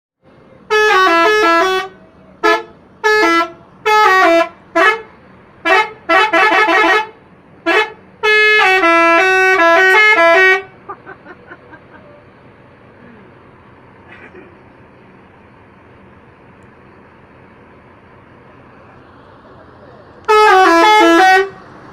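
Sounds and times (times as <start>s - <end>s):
bus musical horn melody: 0.5s - 11.0s, 20.2s - 21.9s.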